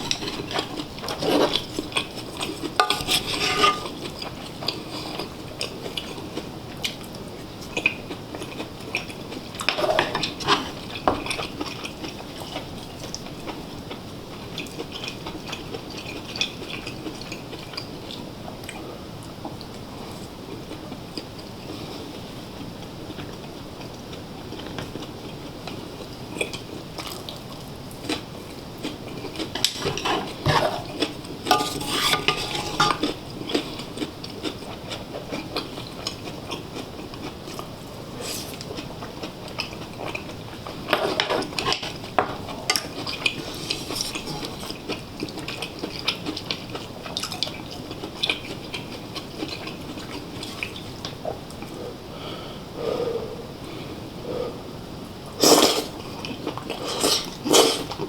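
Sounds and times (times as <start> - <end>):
metal utensils clinking on bowls: 2.8 - 4.0, 29.7 - 33.1, 43.7 - 44.7
background hiss: 37.4 - 39.1, 50.2 - 58.0.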